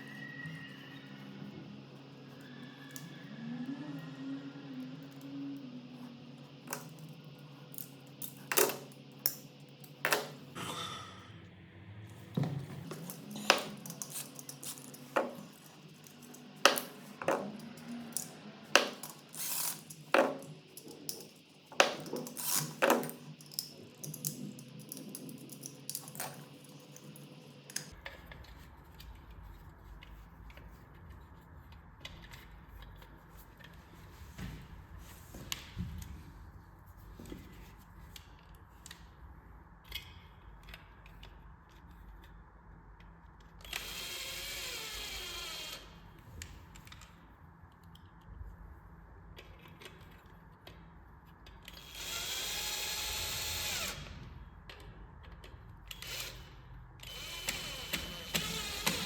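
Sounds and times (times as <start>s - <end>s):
small parts clicking and clinking: 6.7s - 10.4s, 12.8s - 28.0s.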